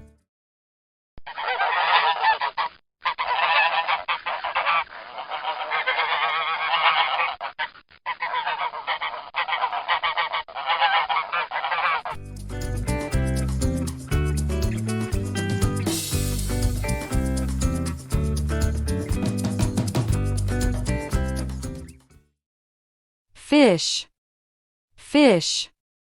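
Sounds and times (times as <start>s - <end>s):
geese honking: 1.3s - 12.2s.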